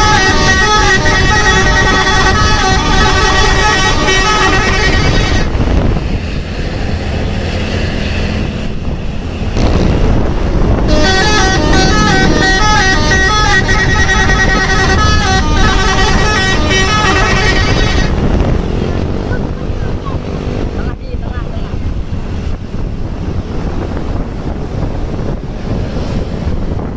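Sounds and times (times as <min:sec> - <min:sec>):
horn note: 0:00.0 - 0:05.5, 0:10.6 - 0:18.4
bus musical horn melody: 0:00.0 - 0:05.9, 0:10.6 - 0:19.0
vehicle rumble: 0:00.0 - 0:26.9.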